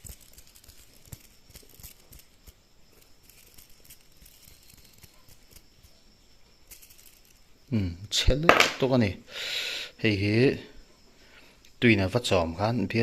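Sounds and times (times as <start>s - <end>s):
light rustling of small parts: 0.0s - 7.7s.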